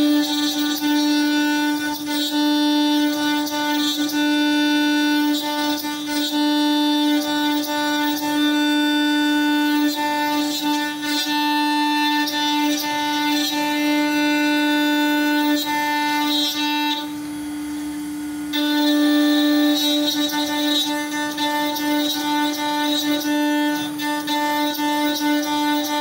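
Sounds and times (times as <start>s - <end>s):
milling machine cutting metal: 0.0s - 26.0s.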